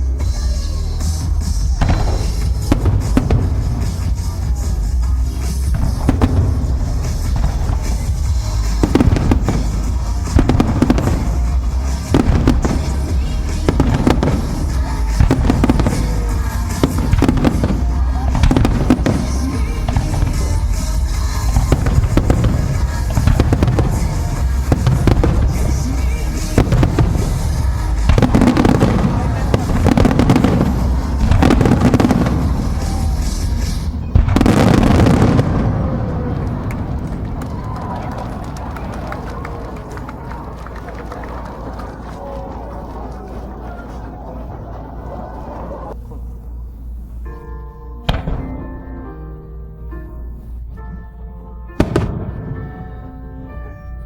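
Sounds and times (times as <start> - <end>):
fireworks bursting with bangs: 0.0 - 42.5, 48.0 - 49.3, 50.2 - 54.0
deep rumble: 1.2 - 40.1.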